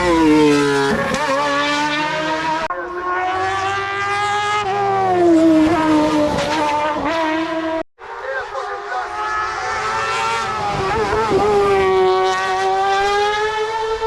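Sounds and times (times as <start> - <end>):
racing car engine at high revs: 0.0 - 14.0.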